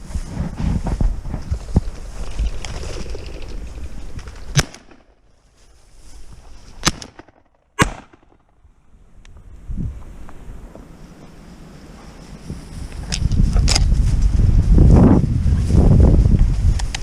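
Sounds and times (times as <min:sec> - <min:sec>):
wind rumbling on microphone: 0:00.0 - 0:06.9, 0:08.6 - 0:17.0
shotgun shots: 0:04.5 - 0:05.1, 0:06.8 - 0:08.4.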